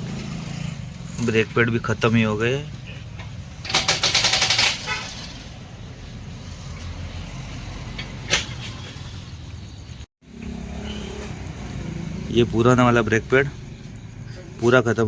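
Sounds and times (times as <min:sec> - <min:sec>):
impact wrench rattling: 0:03.6 - 0:05.5.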